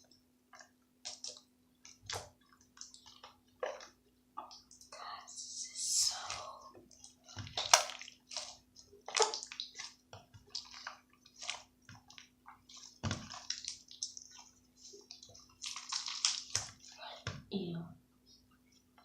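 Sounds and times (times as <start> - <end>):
slime squishing: 0.5 - 5.0, 6.2 - 17.5.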